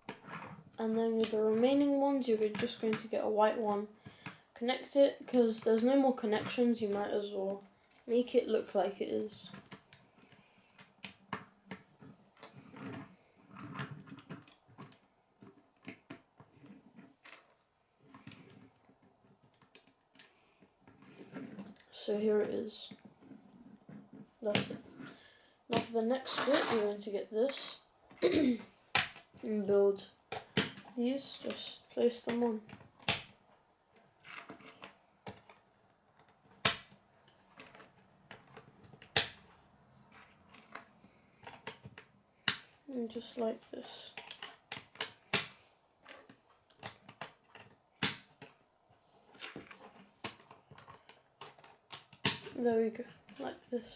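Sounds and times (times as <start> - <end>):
soft plastic rustling: 0.1 - 53.9
plastic pieces snapping together: 28.9 - 29.3, 30.3 - 30.8, 32.3 - 33.4, 34.3 - 37.0, 37.6 - 39.6, 40.6 - 42.8, 44.2 - 48.6, 49.4 - 52.6.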